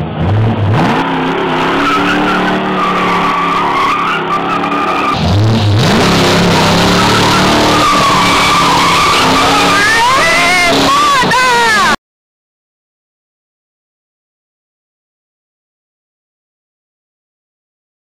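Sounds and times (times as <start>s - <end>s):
car engine revving hard: 0.0s - 12.0s
tyres screeching: 0.7s - 12.0s.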